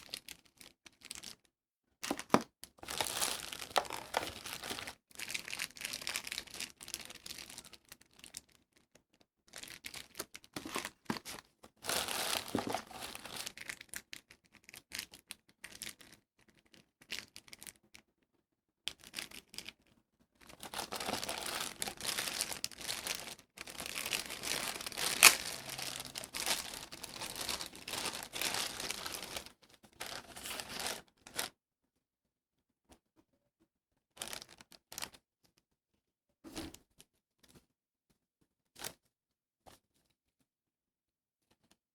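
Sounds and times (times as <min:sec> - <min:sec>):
plastic packaging crinkling and tearing: 0:02.0 - 0:08.5, 0:09.5 - 0:16.1, 0:20.4 - 0:31.5.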